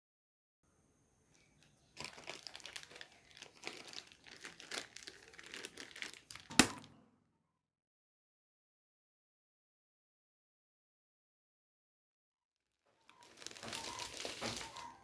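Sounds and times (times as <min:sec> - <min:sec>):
packaging crinkling: 0:01.4 - 0:06.9, 0:13.1 - 0:15.0.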